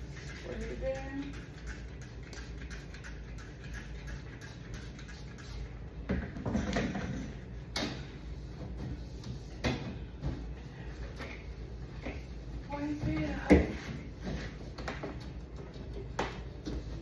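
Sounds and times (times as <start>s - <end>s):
short noisy cleaning bursts: 0.0s - 5.8s, 10.4s - 14.8s
refrigerator low hum: 0.0s - 17.0s.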